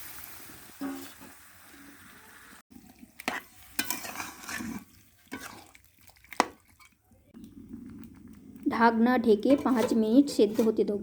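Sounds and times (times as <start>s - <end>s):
utensil clinking and scraping pan: 3.2s - 7.0s, 9.2s - 11.0s.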